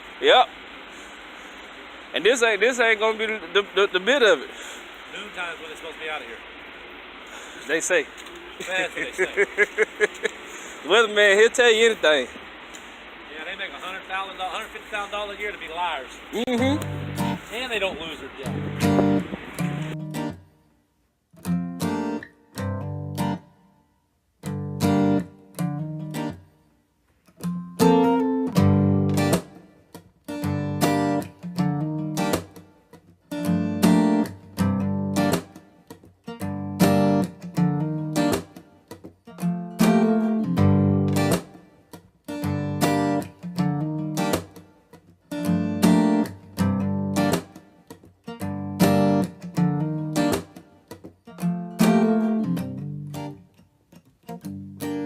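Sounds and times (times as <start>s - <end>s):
strummed acoustic guitar: 13.5s - 20.8s, 21.4s - 55.0s.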